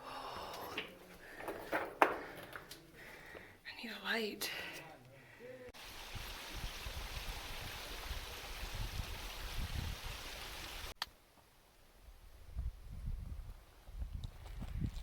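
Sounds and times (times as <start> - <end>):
flowing water rushing: 5.8 - 10.9
wind buffeting microphone: 6.1 - 10.3, 12.4 - 15.0.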